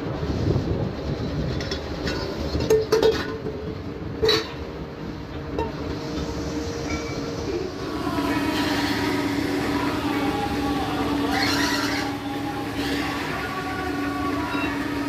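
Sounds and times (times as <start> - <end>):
machine running: 5.0 - 15.0.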